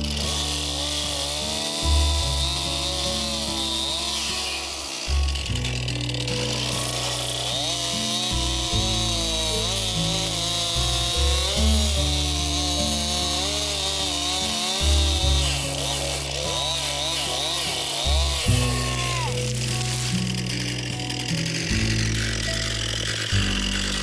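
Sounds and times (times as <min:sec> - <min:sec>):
chainsaw running: 0:00.0 - 0:24.0
background music with bass notes: 0:05.1 - 0:24.0.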